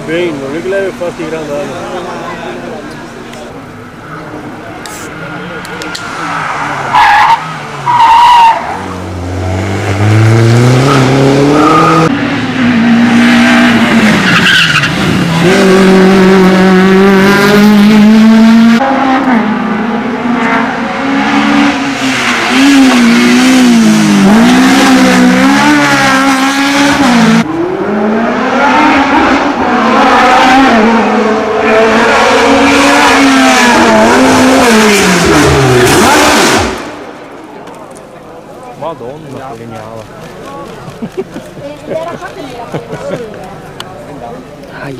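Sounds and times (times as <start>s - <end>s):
race car engine revving: 2.6s - 37.3s.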